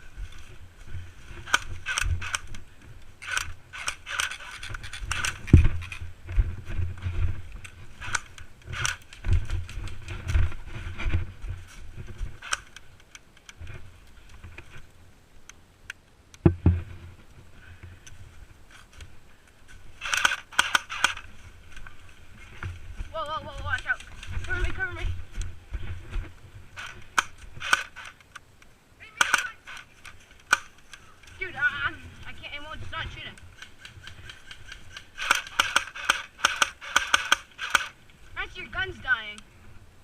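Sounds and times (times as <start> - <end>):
low thuds and scraping: 0.0 - 12.8, 16.4 - 19.0, 19.6 - 28.2
gear jangling and rattling: 3.2 - 6.0.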